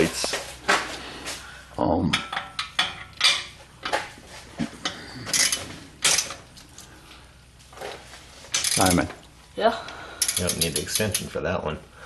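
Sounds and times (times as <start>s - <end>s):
metallic clicks of hand tools: 5.3s - 6.4s, 10.2s - 11.3s.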